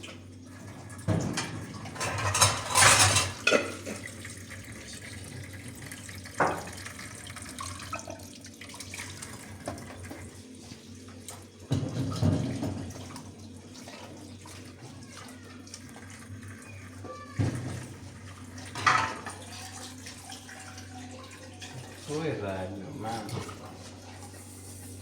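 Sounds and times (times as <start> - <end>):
tap water gushing: 0.0 - 25.0
dishes clattering in sink: 0.7 - 4.4, 6.3 - 7.0, 11.1 - 24.0.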